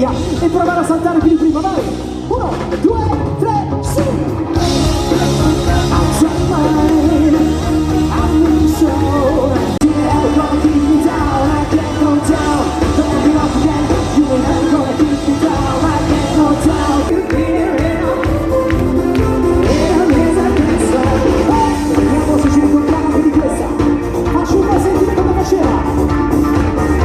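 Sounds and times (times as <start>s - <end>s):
live pop-rock band: 0.0s - 27.0s
person singing: 3.1s - 27.0s.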